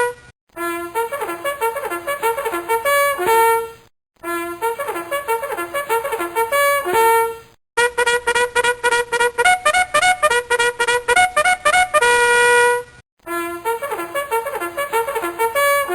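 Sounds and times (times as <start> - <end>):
bugle call: 0.6 - 7.5, 13.3 - 15.9.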